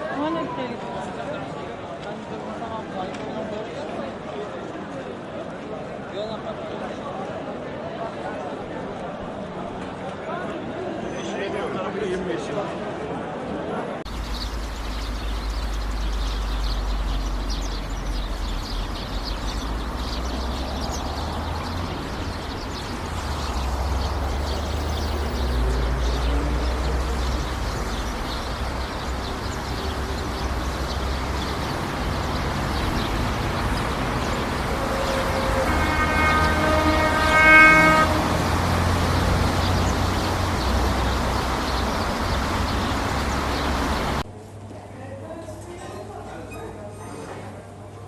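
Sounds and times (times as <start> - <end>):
vehicle horn: 14.1 - 44.0
low traffic rumble: 14.1 - 44.2.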